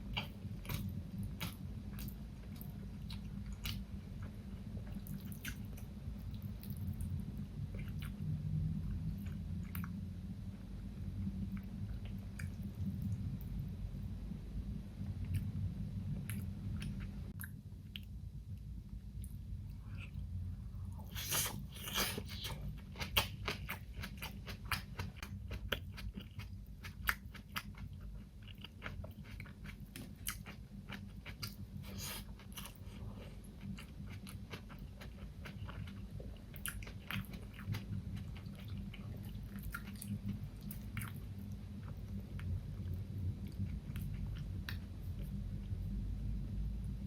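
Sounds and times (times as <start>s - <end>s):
low hum: 0.0s - 23.9s, 29.7s - 47.0s
person chewing food: 0.1s - 8.2s, 21.0s - 45.4s.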